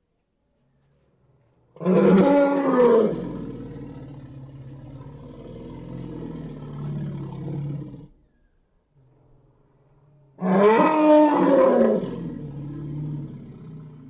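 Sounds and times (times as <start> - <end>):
low rumbling growl: 11.6 - 14.0.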